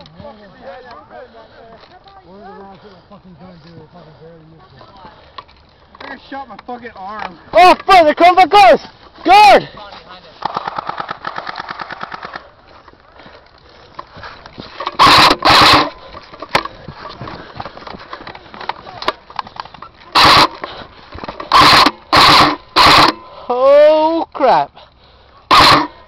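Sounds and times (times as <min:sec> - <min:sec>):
electric gun firing full-auto: 0:10.4 - 0:12.5, 0:15.0 - 0:16.0, 0:20.2 - 0:20.6, 0:21.5 - 0:23.2, 0:25.5 - 0:26.0
short very loud noises: 0:14.8 - 0:16.1, 0:20.1 - 0:20.8, 0:21.4 - 0:23.3, 0:25.5 - 0:26.0.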